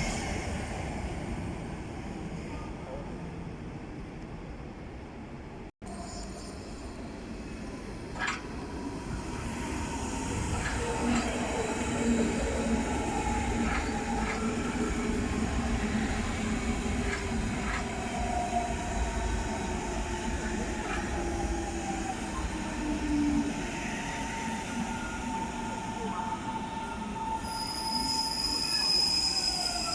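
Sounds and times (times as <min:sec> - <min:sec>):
train rumbling along rails: 0:00.0 - 0:29.9
train wheels clicking: 0:13.4 - 0:14.8.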